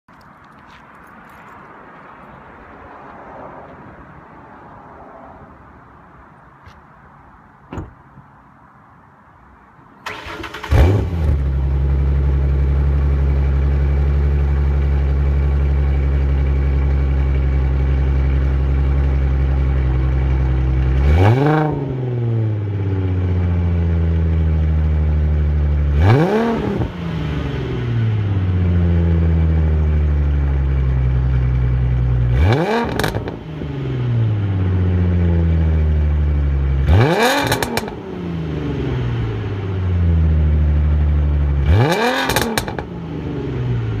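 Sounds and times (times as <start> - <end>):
car engine starting and idling: 10.0 - 44.0
car engine revving: 25.9 - 28.6, 32.3 - 35.8, 36.8 - 44.0.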